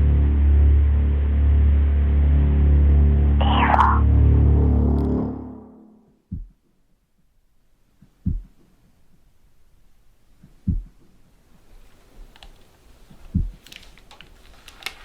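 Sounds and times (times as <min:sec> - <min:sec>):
deep slow thuds: 0:06.2 - 0:06.7, 0:08.0 - 0:08.8, 0:10.4 - 0:11.2, 0:13.3 - 0:13.6.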